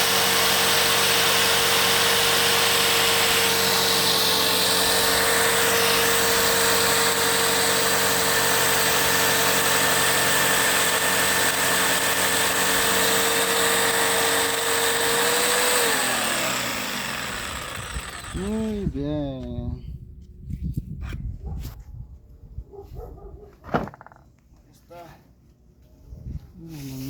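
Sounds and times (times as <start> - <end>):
jigsaw cutting stone: 0.0 - 18.9.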